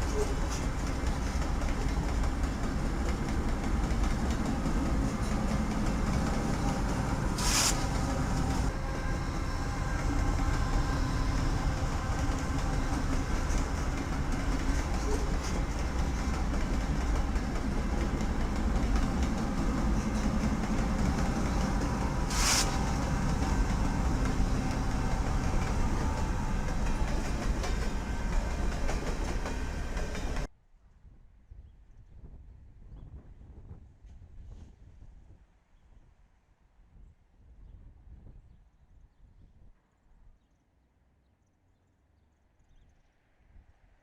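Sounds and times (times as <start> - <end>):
railroad cars rumbling past: 0.0 - 30.5.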